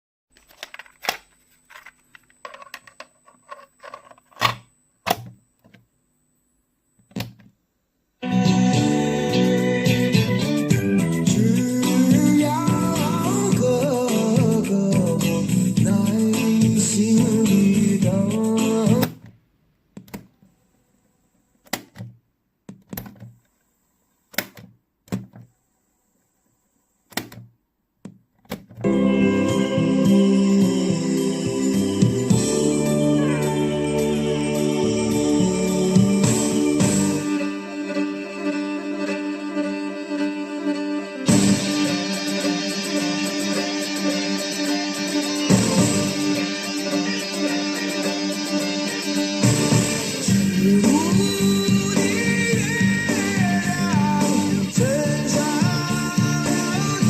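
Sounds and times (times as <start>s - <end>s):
music: 8.2s - 19.2s, 28.8s - 57.0s.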